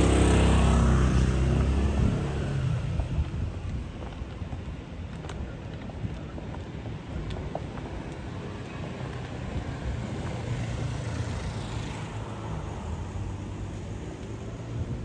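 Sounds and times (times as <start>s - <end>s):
road traffic rumble: 0.0s - 15.0s
vehicle tyre hiss passing: 10.0s - 15.0s.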